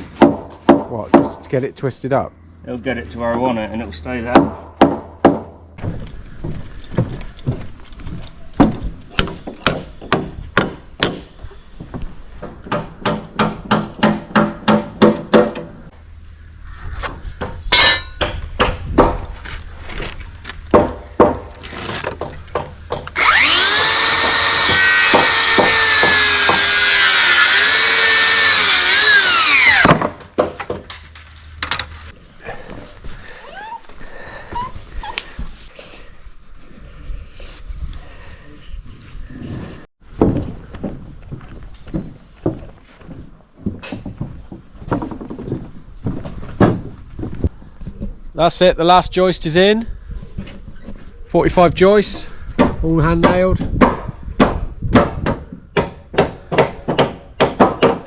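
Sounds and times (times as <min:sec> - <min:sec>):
hammer driving nails into timber: 0:12.7 - 0:15.8, 0:20.7 - 0:31.0
power tool running: 0:23.0 - 0:30.0.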